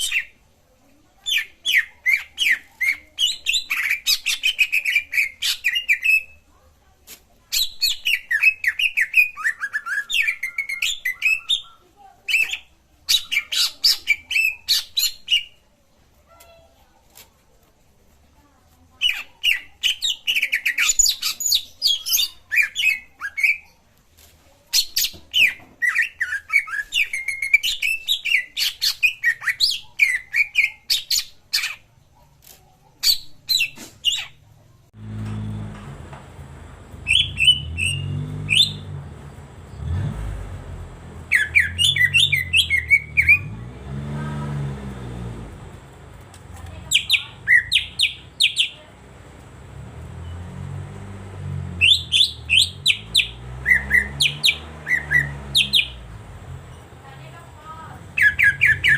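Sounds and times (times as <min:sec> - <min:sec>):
bird chirps and twitters: 0:19.0 - 0:23.8, 0:37.0 - 0:40.0, 0:40.9 - 0:43.6, 0:46.7 - 0:48.8, 0:51.8 - 0:57.0, 0:58.1 - 0:58.9.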